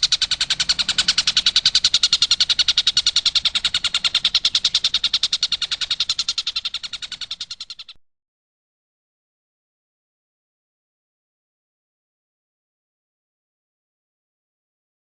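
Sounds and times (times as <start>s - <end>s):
kingfisher rattle call: 0.0s - 8.0s.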